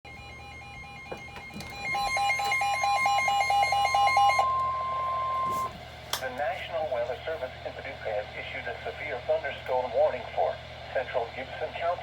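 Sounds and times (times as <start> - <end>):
rapid beeping alarm: 0.1 - 5.8.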